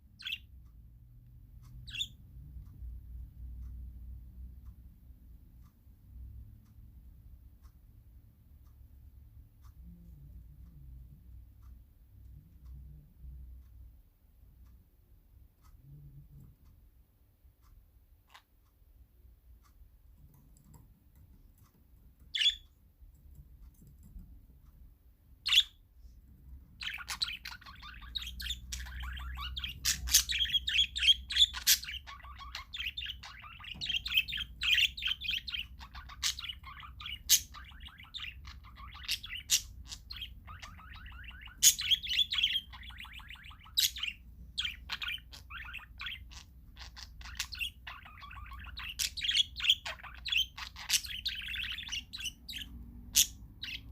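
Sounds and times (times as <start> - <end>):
parakeets chattering: 0.0 - 0.6, 1.7 - 3.9, 22.2 - 22.6, 25.4 - 25.8, 26.4 - 53.9.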